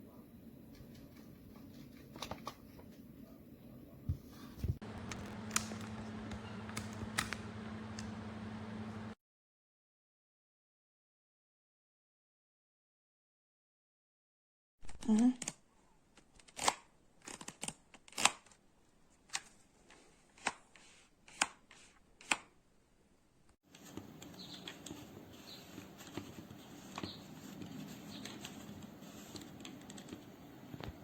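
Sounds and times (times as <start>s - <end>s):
low hum and hiss: 0.0s - 9.2s.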